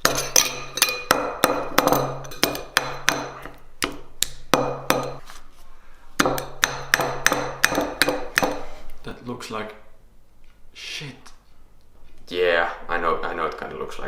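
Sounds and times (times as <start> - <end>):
sharp hammer-like knocks: 0.0 - 5.2, 6.2 - 8.8.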